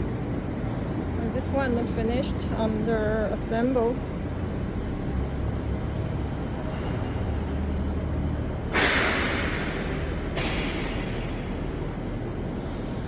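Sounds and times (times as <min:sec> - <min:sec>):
loud hiss: 0:08.7 - 0:11.7, 0:12.5 - 0:13.0.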